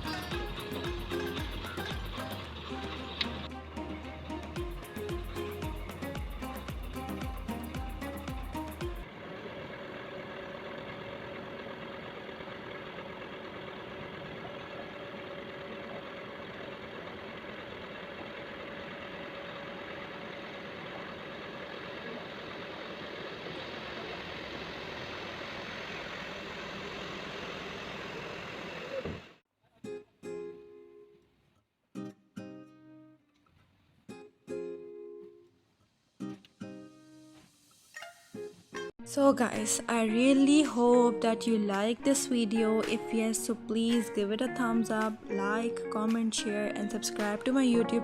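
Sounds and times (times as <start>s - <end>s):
diesel engine droning: 0.0s - 29.4s.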